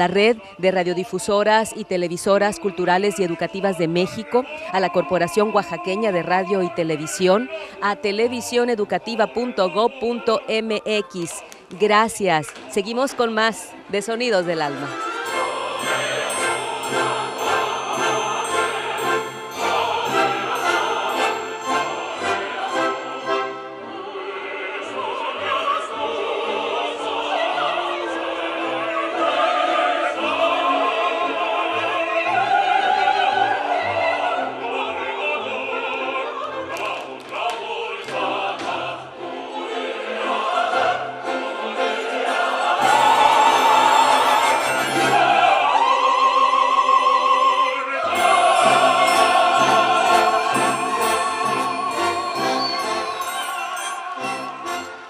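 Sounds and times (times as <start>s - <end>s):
operatic singing with vibrato: 0.0s - 55.0s
classical orchestra: 14.9s - 37.1s, 37.8s - 45.9s, 48.0s - 55.0s.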